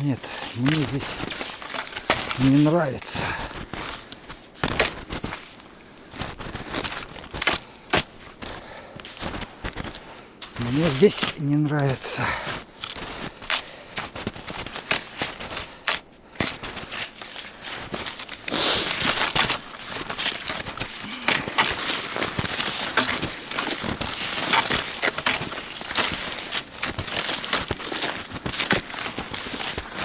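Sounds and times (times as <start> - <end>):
skis crunching through snow: 0.0 - 30.0.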